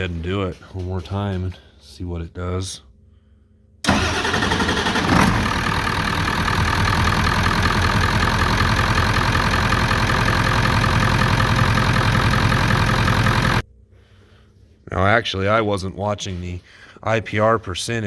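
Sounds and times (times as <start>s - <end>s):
diesel engine running: 3.8s - 13.6s
engine starter cranking: 3.8s - 13.6s.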